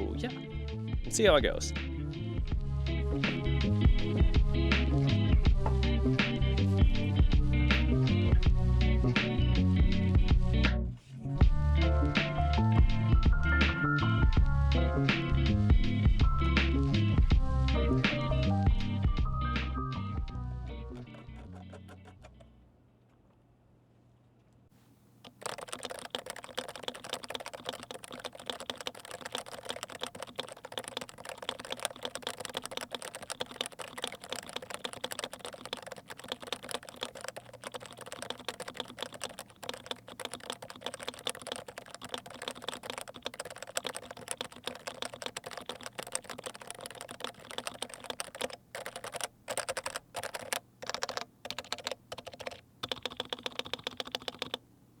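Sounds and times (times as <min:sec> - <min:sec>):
fast keyboard typing: 0:06.6 - 0:07.4, 0:21.0 - 0:22.3, 0:25.2 - 0:54.6.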